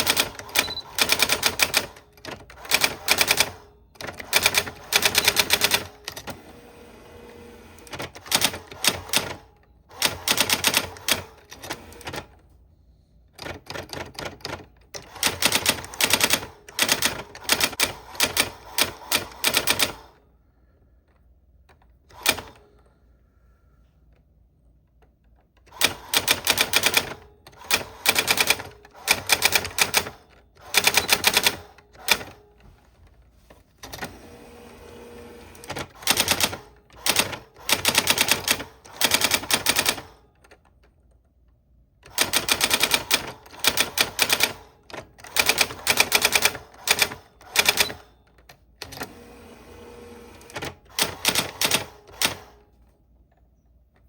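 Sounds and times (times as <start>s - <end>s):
typewriter keystrokes: 0.0s - 6.4s, 7.8s - 12.3s, 13.4s - 20.1s, 22.1s - 22.6s, 25.6s - 32.6s, 35.6s - 41.0s, 42.0s - 49.1s, 50.4s - 52.6s.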